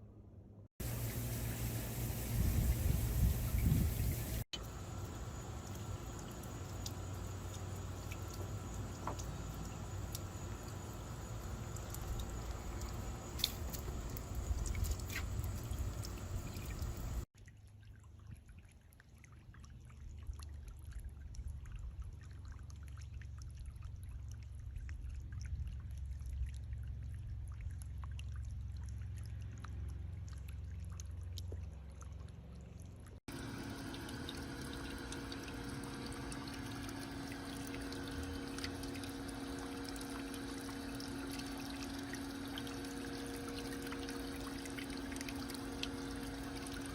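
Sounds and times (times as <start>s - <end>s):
fountain spray splashing water: 0.8s - 17.2s.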